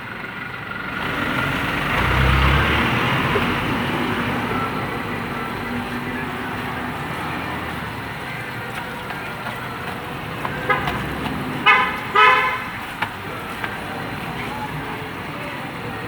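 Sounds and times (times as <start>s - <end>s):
passing traffic hum: 0.0s - 16.0s
vehicle horn honking: 10.5s - 12.9s.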